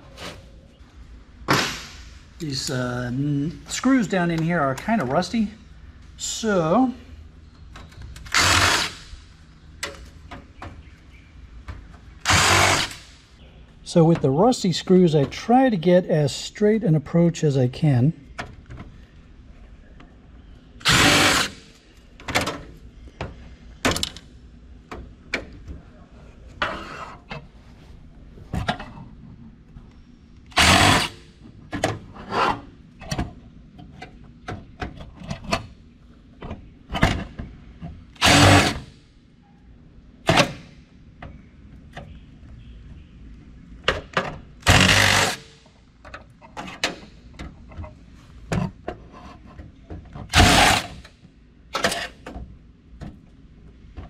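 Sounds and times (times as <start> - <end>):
power driver running: 20.8 - 21.6, 30.5 - 31.2, 38.2 - 38.8, 44.6 - 45.4, 50.3 - 51.0.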